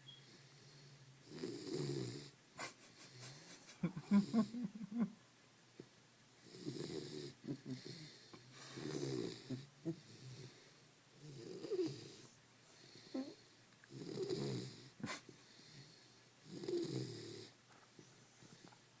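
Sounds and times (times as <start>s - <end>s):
pet snoring loudly: 1.2s - 2.3s, 6.4s - 10.5s, 11.2s - 12.3s, 13.2s - 14.9s, 16.4s - 17.6s.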